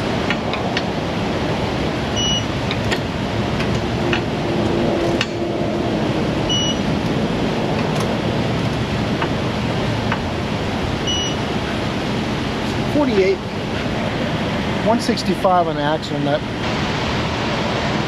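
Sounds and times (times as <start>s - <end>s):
road and wind noise in car: 0.0s - 18.0s
short high beep: 6.5s - 6.8s, 11.0s - 11.4s.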